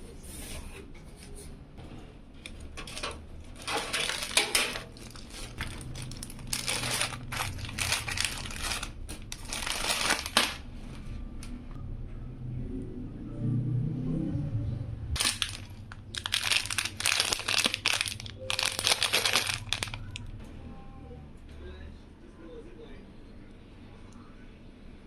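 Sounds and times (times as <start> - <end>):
packing material crinkling: 2.8 - 10.7, 15.2 - 20.3.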